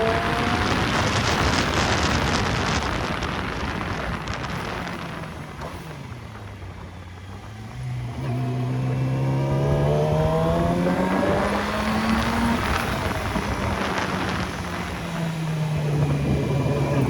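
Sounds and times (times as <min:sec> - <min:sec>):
vehicle engine accelerating: 0:00.0 - 0:17.0.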